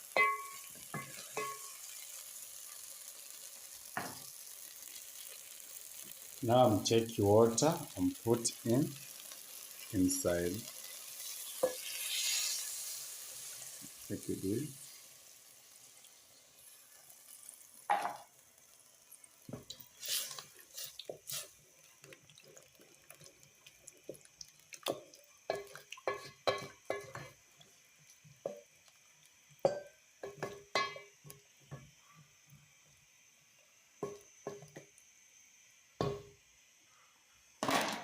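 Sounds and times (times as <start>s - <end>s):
metal pot and utensils clinking: 0.1s - 1.8s, 25.5s - 27.4s, 29.6s - 31.1s
water dripping and splashing: 20.8s - 28.2s.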